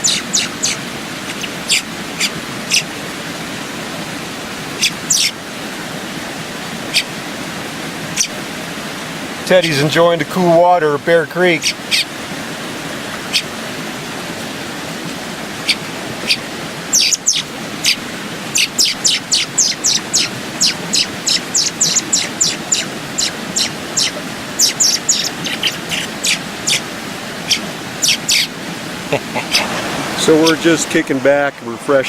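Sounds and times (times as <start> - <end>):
young bird chirping: 0.0 - 2.9, 4.8 - 5.4, 8.2 - 8.4, 11.6 - 12.1, 13.3 - 13.5, 15.6 - 26.8, 27.4 - 28.6
creek rushing: 0.0 - 32.0.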